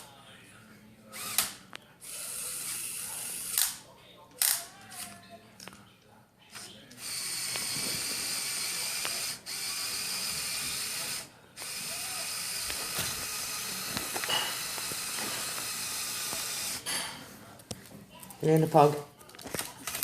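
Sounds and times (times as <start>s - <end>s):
electric motor whirring: 7.0s - 16.8s.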